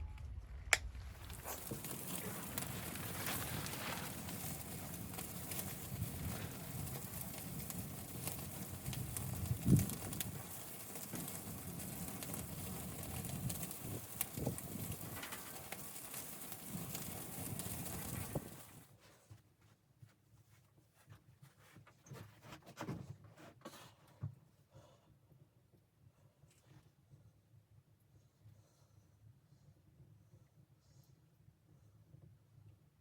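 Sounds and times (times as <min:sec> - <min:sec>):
low steady rumble: 0:00.0 - 0:04.9
wood fire crackling: 0:00.0 - 0:19.0.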